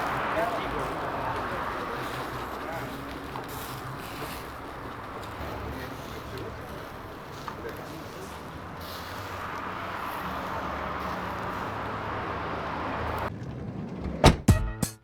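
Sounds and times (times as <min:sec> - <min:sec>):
music with struck notes: 0:14.5 - 0:15.0.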